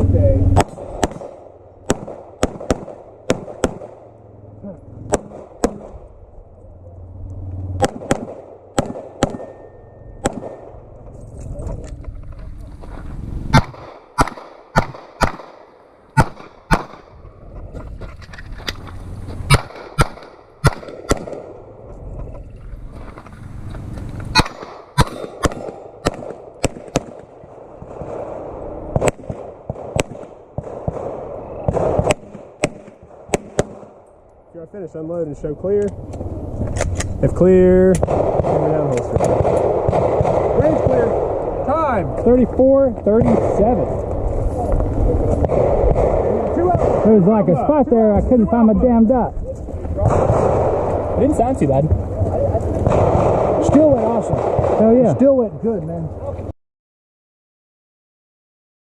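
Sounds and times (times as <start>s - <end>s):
pistol shots: 0.5s - 4.2s, 5.1s - 6.1s, 7.8s - 10.9s, 13.5s - 17.2s, 19.5s - 21.6s, 24.3s - 34.1s, 37.9s - 41.6s, 45.4s - 47.4s, 50.0s - 51.1s, 52.8s - 55.2s.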